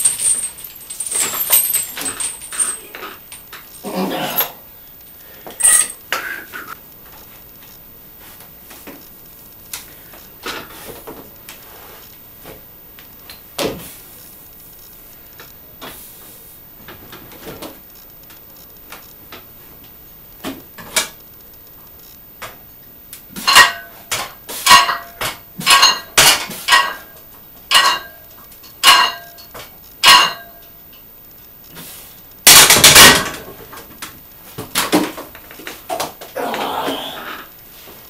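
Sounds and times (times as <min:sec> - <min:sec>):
metal clatter: 0:00.0 - 0:03.1, 0:27.7 - 0:28.2, 0:28.8 - 0:30.6.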